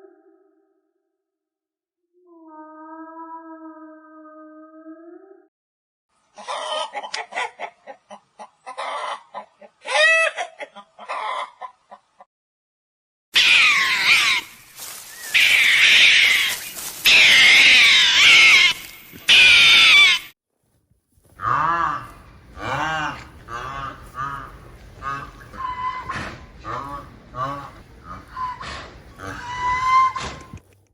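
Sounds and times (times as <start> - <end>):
chickens clucking: 6.4 - 12.0, 21.4 - 30.6
high wavering chicken calls: 13.4 - 20.3, 21.4 - 30.6.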